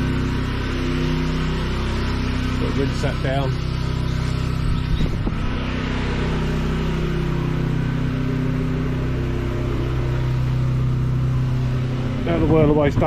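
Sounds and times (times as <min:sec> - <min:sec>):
pressure washer engine running: 0:00.0 - 0:13.0.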